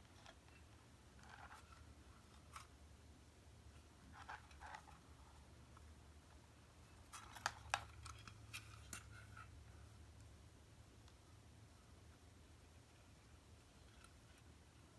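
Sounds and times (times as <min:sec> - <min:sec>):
low steady hum: 0:00.0 - 0:14.9.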